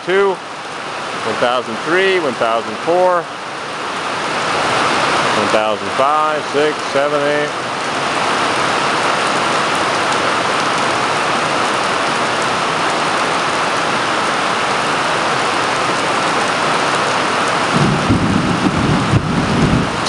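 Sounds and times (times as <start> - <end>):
heavy rain: 0.0 - 20.0
distant thunder rumble: 17.6 - 20.0.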